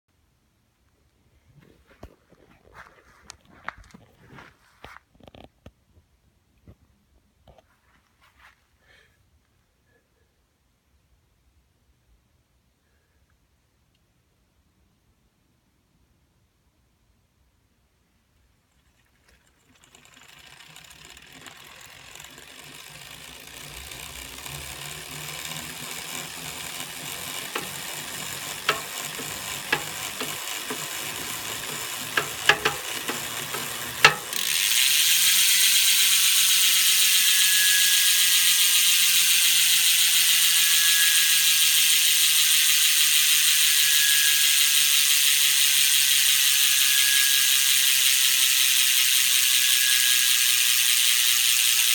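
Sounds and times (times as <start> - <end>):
freehub ratchet buzzing: 19.4 - 51.9
high-pitched whine: 22.8 - 48.2.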